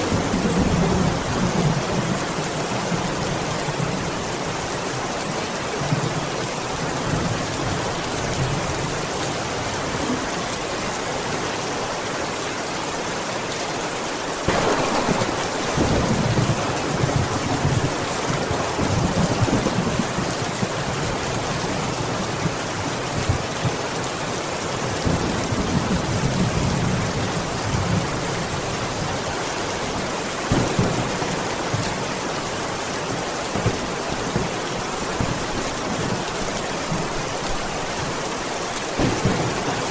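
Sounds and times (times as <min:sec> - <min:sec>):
heavy rain: 0:00.0 - 0:39.9
thunder rumbling: 0:14.5 - 0:21.7, 0:30.5 - 0:37.3, 0:39.0 - 0:39.9.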